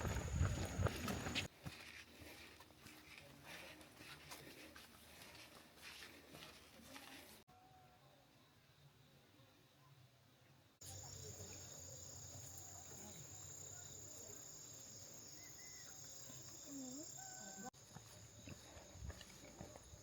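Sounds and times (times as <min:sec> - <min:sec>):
high-pitched insect chorus: 0:10.8 - 0:20.0.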